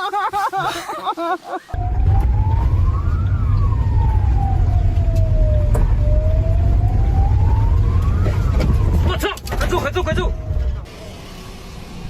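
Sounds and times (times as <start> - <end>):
siren wailing: 1.7 - 11.2
heavy low rumble: 1.8 - 10.9.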